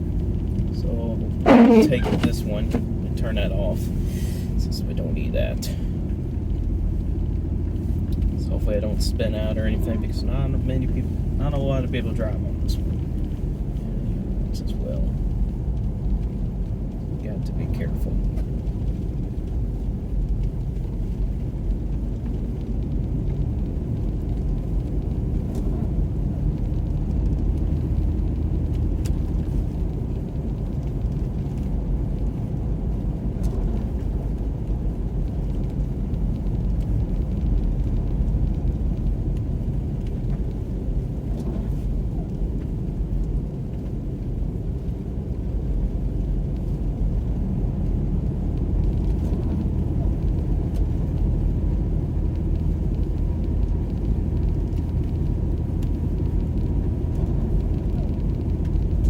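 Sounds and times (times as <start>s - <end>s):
car engine and tyre rumble: 0.0s - 59.0s.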